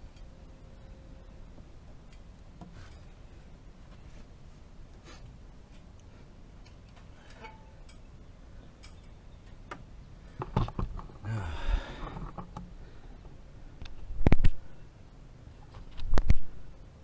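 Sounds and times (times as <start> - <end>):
knocks and rustling: 10.3 - 12.7.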